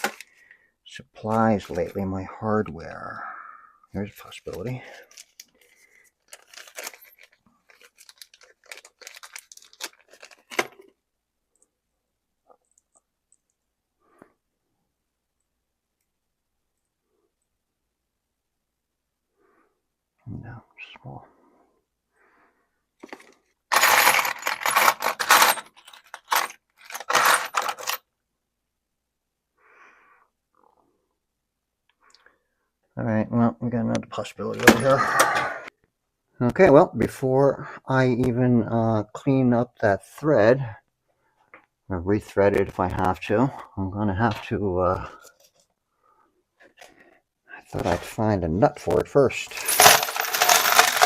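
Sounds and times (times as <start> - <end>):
hardware rattling in a bin: 0.0 - 0.2, 23.0 - 28.0, 34.6 - 35.4, 49.5 - 51.0
metal hardware clattering: 49.7 - 51.0.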